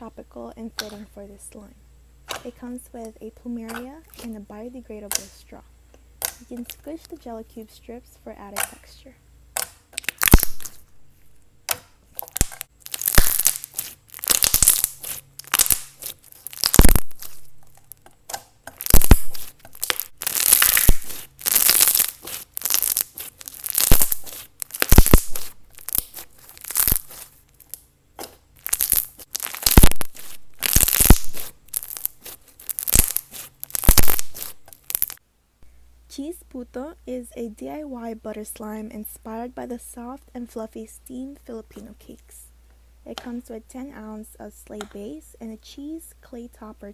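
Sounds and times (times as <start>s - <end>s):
slime squished by hand: 9.6s - 10.9s, 11.7s - 17.9s, 18.7s - 35.2s.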